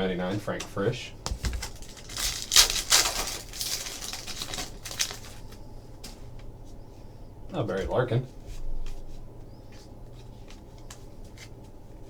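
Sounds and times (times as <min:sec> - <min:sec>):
pack wrapper crinkling: 0:01.3 - 0:05.6.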